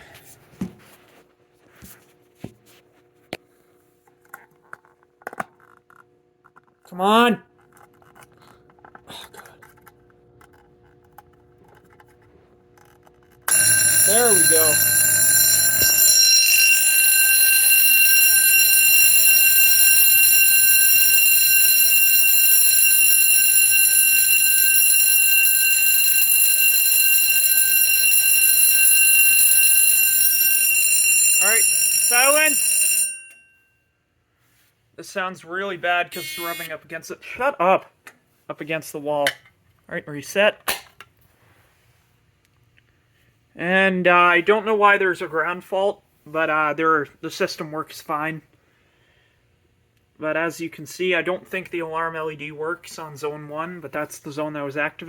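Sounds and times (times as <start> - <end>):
fire alarm bell ringing: 13.5 - 33.8, 36.1 - 36.8.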